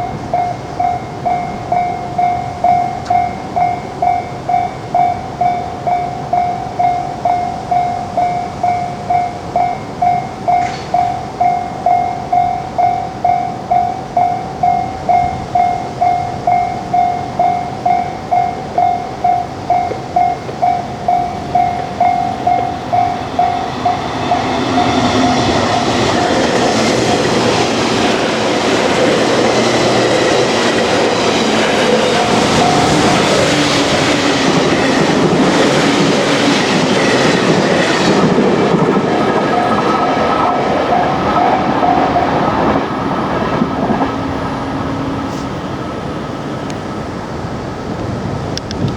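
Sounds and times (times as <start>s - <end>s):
level crossing bell ringing: 0.0s - 38.0s
train rumbling past: 0.0s - 48.9s.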